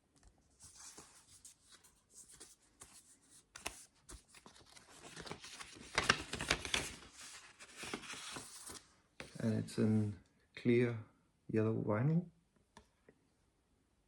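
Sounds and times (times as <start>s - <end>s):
vinyl record sleeve rustling: 0.5s - 9.5s.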